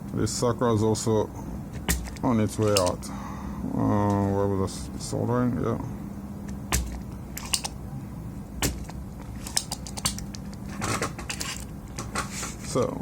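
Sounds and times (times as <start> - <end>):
steady low hum: 0.0 - 13.0
small tools clicking and tapping: 1.9 - 3.0, 6.8 - 7.8, 8.6 - 12.1.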